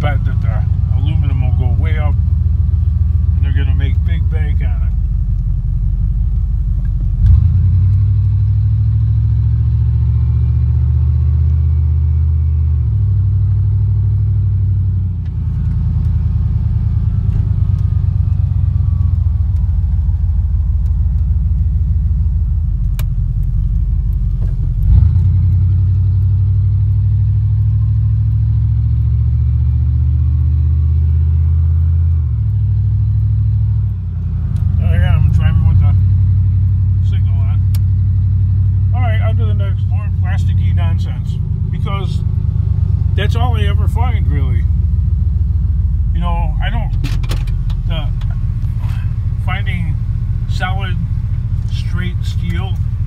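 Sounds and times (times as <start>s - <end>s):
vehicle engine and road drone: 0.0s - 53.0s
vehicle jolt: 40.6s - 53.0s.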